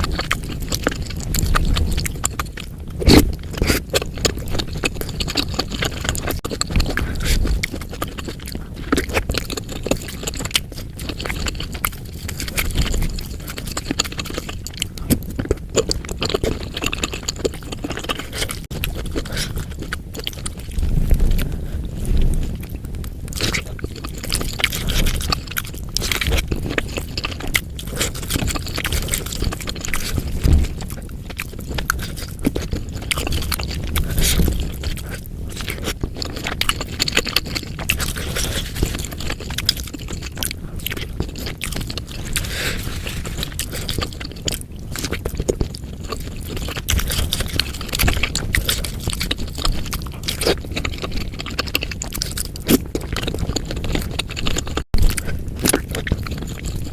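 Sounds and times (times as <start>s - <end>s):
chewing and biting: 0.0s - 56.9s
wet mouth noises: 0.0s - 56.9s.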